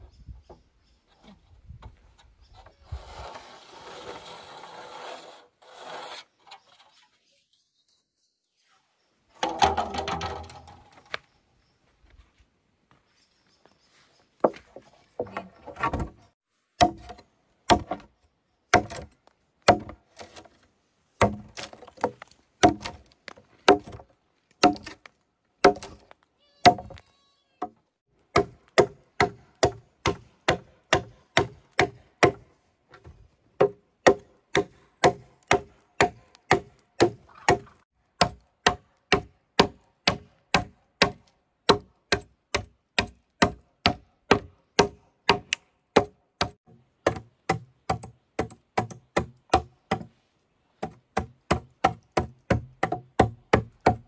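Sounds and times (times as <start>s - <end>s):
sharp strikes on wood: 16.8s - 18.1s, 19.7s - 20.0s, 21.2s - 23.0s, 24.6s - 25.0s.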